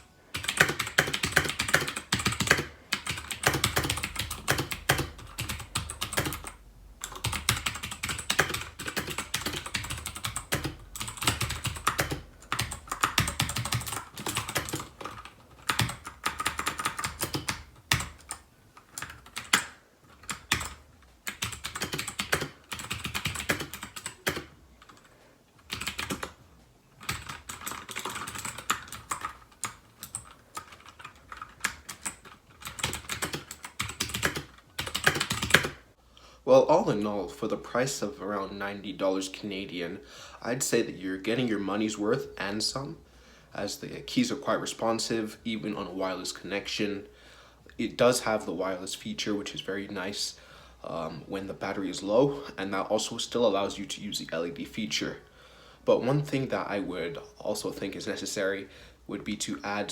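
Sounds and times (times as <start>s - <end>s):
clicky mechanical keyboard typing: 0.3s - 26.4s, 27.0s - 35.8s.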